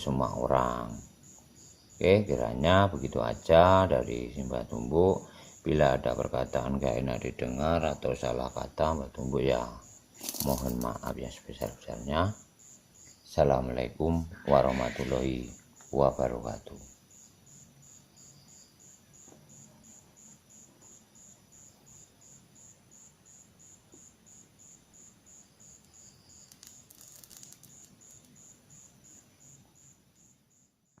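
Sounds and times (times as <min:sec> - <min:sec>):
insect chirping faintly: 0:00.0 - 0:31.0
crackling rustle: 0:10.1 - 0:11.8, 0:25.8 - 0:28.5.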